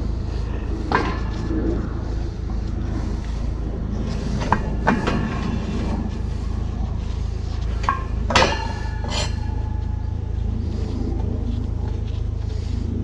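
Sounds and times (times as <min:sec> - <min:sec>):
steady low hum: 0:00.0 - 0:13.0
metal clanks and clicks: 0:07.7 - 0:10.1.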